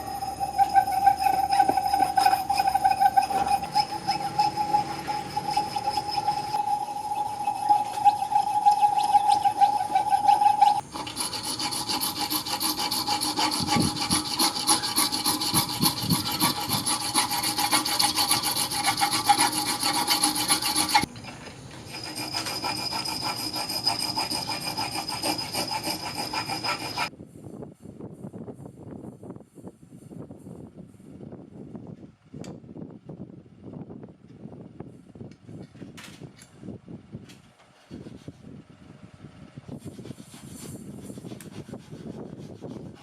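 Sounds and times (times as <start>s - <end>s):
abrasive tool scraping metal: 0.0s - 27.1s, 39.7s - 43.0s.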